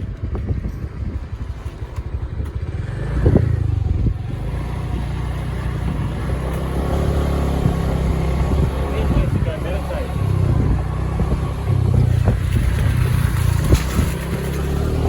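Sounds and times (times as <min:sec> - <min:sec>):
motorbike engine rumble: 0:00.0 - 0:15.0.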